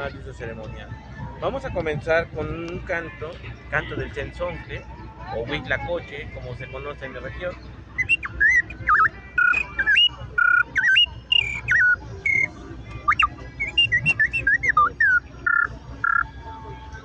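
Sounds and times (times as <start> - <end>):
bird-call whistle notes and trills: 7.5 - 17.0.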